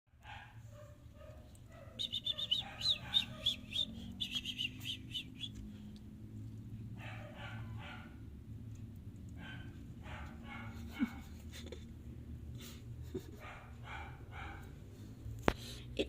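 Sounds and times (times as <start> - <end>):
fainter lower calls: 2.0 - 5.6
high-pitched chirping calls: 2.0 - 5.6.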